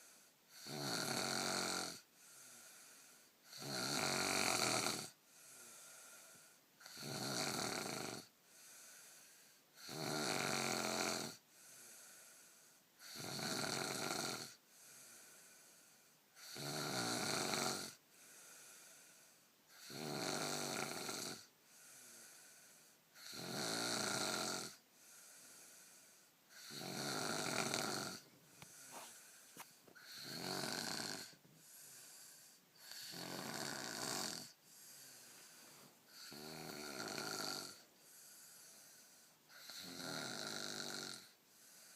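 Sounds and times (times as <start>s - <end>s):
person snoring: 0.0s - 41.9s
soft breaths: 2.0s - 3.4s, 5.1s - 6.8s, 8.3s - 9.8s, 11.4s - 13.0s, 14.6s - 16.3s, 18.0s - 19.7s, 21.4s - 23.2s, 24.8s - 40.0s, 41.2s - 41.9s.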